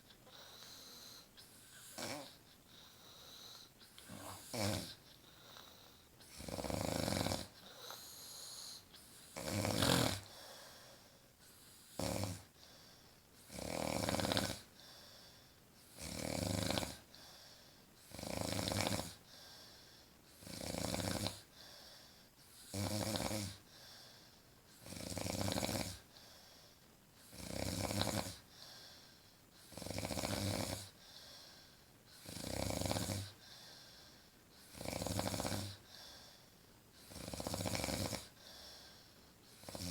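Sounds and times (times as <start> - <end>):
quiet breathing: 0.0 - 39.9
woman snoring: 0.7 - 2.4, 4.0 - 5.0, 6.3 - 10.4, 11.9 - 12.5, 13.5 - 14.7, 16.0 - 17.1, 18.1 - 19.2, 20.4 - 21.5, 22.7 - 23.6, 24.8 - 26.0, 27.3 - 28.4, 29.7 - 30.9, 32.2 - 33.4, 34.7 - 35.8, 37.1 - 38.4, 39.6 - 39.9.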